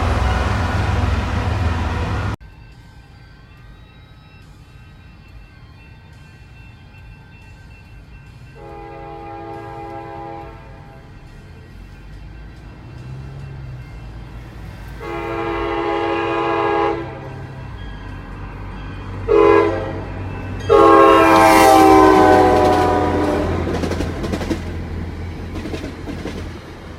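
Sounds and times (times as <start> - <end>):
train horn chord blasts: 0.0 - 2.4, 8.2 - 17.9, 18.5 - 24.8
train wheels clacking on rails: 7.4 - 26.9.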